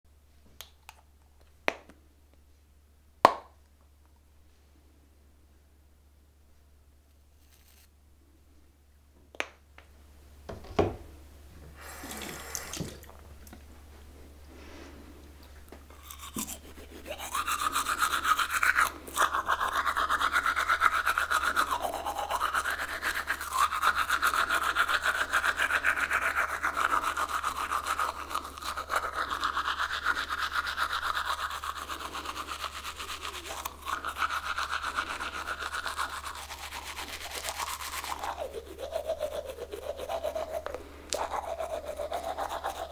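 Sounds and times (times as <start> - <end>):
toothbrush scrubbing teeth: 15.9 - 42.9.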